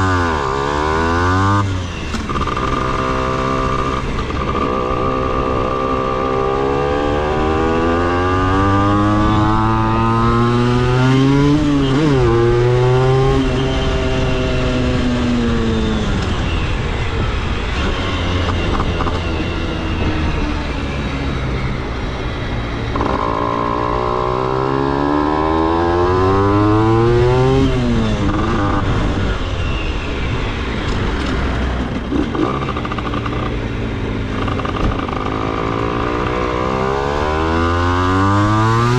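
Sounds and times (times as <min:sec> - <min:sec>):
two-stroke engine revving: 0:00.0 - 0:16.2, 0:22.9 - 0:29.4, 0:31.3 - 0:38.9.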